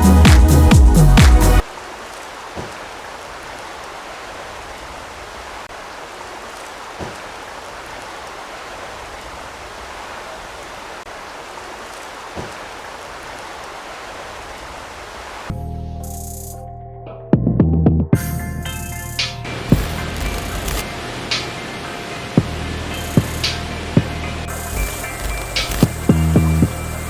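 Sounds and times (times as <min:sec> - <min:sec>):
stream water rushing: 0:00.0 - 0:15.5, 0:19.4 - 0:27.0.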